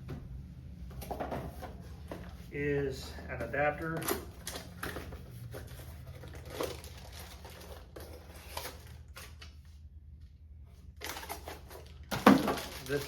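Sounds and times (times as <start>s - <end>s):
low room hum: 0.0s - 13.0s
packaging being handled: 3.8s - 9.5s, 11.0s - 13.0s.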